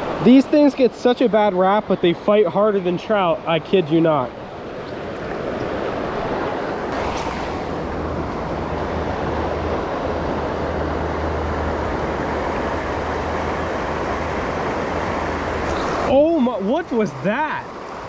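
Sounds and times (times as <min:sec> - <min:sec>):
stream water rushing: 0:00.0 - 0:18.0
low rumble: 0:06.9 - 0:10.8.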